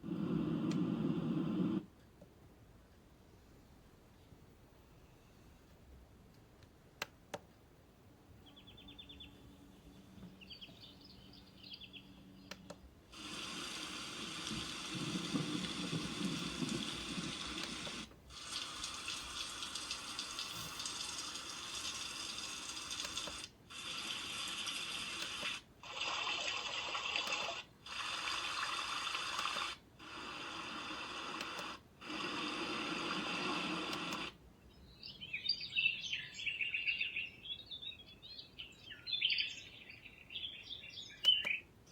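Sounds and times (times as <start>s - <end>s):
birds chirping: 8.3s - 21.1s, 34.6s - 41.9s
rushing water-like noise: 13.2s - 25.1s.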